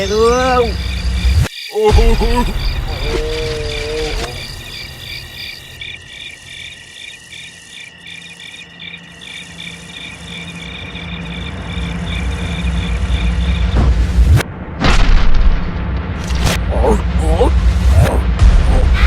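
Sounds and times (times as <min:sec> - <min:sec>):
cricket chirping: 0:00.0 - 0:14.5.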